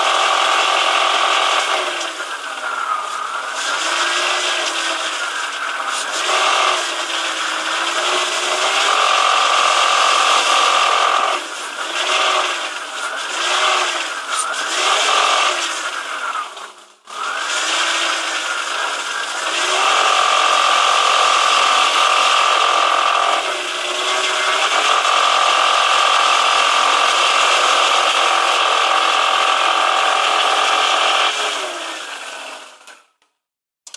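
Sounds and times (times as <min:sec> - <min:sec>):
car engine revving: 0:00.0 - 0:22.5
buzzy engine rattle: 0:00.0 - 0:32.9.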